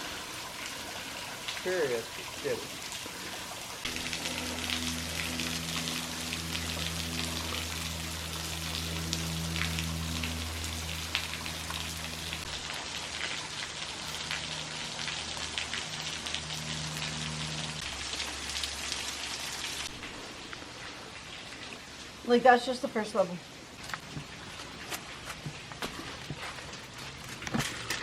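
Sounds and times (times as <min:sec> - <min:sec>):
waterfall splashing: 0:00.0 - 0:20.3
low steady hum: 0:03.0 - 0:13.4.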